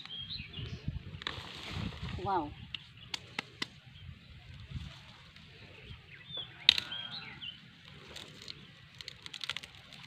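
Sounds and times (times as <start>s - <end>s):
light clicks of roots: 1.2s - 3.8s, 7.8s - 10.0s
bird chirps: 5.7s - 7.7s
roots cracking: 6.6s - 10.0s.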